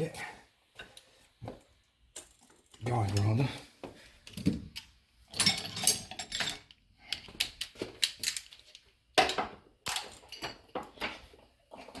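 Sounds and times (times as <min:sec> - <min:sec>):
metal parts clinking: 0:05.3 - 0:06.7, 0:07.4 - 0:08.8.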